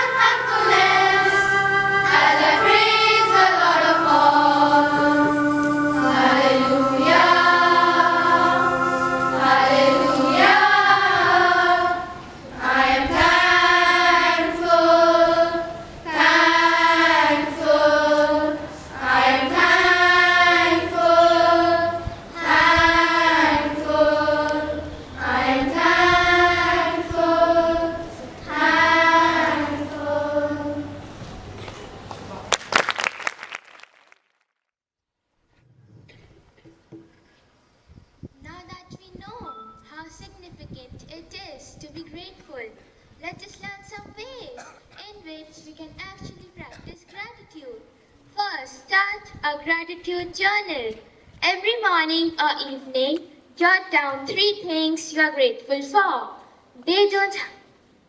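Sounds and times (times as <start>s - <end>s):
children's choir singing: 0.0s - 32.1s.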